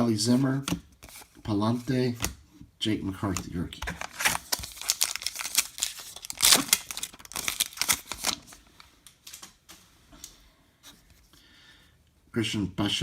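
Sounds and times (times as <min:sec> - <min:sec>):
cards rustling and crinkling: 0:00.3 - 0:02.3, 0:03.2 - 0:11.3.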